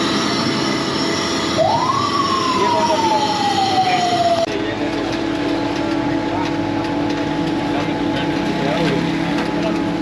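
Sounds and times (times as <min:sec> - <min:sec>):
siren wailing: 0:00.0 - 0:04.5
street noise: 0:00.0 - 0:10.0.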